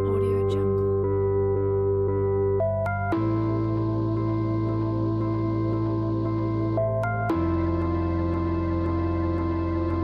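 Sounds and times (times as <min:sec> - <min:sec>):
ambient synthesizer drone chords: 0:00.0 - 0:10.0.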